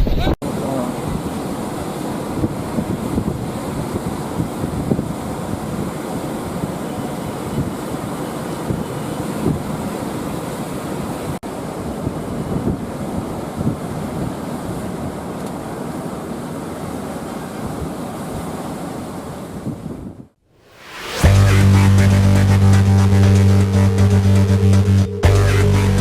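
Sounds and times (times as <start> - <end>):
sea surf washing onto beach: 0.4 - 19.8
wind buffeting microphone: 1.0 - 9.9, 11.7 - 15.3.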